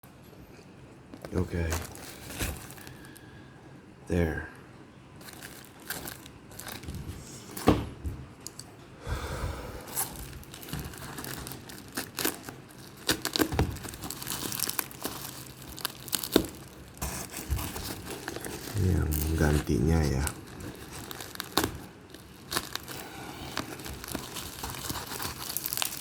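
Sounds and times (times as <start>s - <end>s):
packaging being torn and crinkled: 1.2s - 3.2s, 5.2s - 7.0s, 9.9s - 26.0s.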